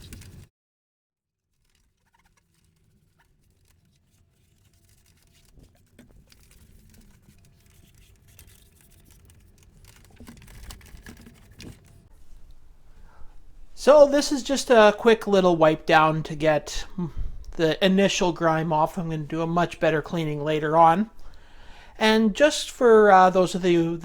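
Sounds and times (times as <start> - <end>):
cloth wiping plastic case: 2.6 - 12.7.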